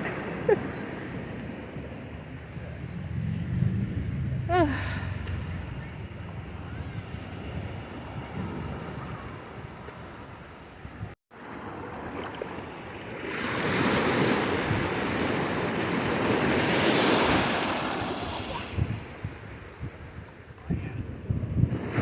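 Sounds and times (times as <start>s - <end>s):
wind buffeting microphone: 1.1s - 11.2s, 13.6s - 22.0s
wave breaking on shore: 11.4s - 19.8s.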